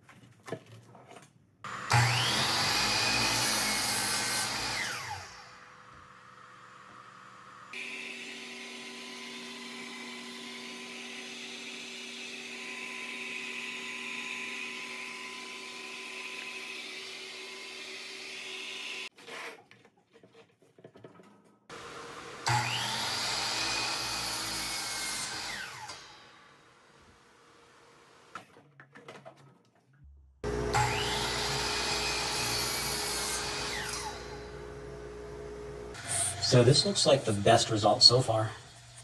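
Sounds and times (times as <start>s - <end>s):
dust extractor running: 1.7s - 5.4s, 21.7s - 25.9s, 30.4s - 39.0s
miter saw motor whine: 1.7s - 5.7s, 21.7s - 26.1s, 30.4s - 38.2s.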